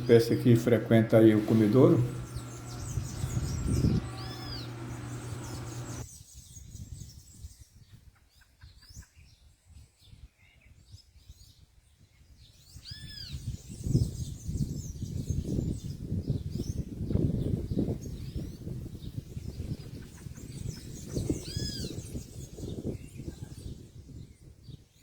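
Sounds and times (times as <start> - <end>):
wild birds chirping: 0.0 - 6.0, 17.4 - 23.7
low rumbling noise: 1.2 - 6.0.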